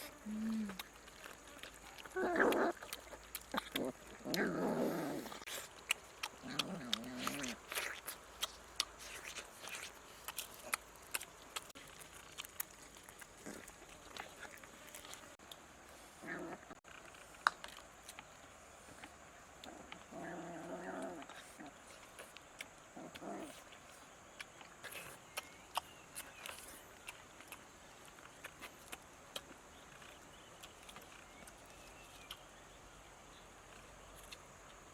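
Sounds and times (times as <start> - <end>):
dog growling: 2.0 - 5.6, 6.4 - 7.7, 13.3 - 14.1, 16.2 - 16.8, 19.6 - 21.8, 23.0 - 23.6.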